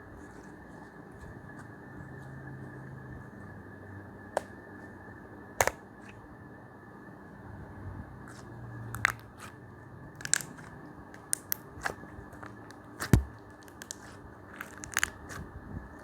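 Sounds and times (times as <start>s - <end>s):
sticky clicks and crackles: 8.3s - 9.6s, 10.2s - 15.4s
slime snap: 10.2s - 15.4s
slime squeezed by hand: 11.4s - 15.4s.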